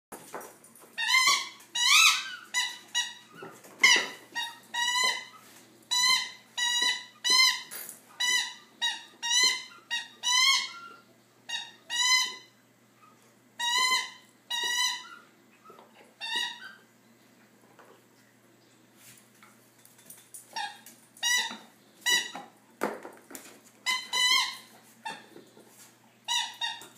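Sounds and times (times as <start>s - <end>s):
rubber squeaky toy squeaking: 1.0s - 12.5s, 13.6s - 15.2s, 16.2s - 16.8s, 20.6s - 22.4s, 23.8s - 25.3s, 26.3s - 26.9s.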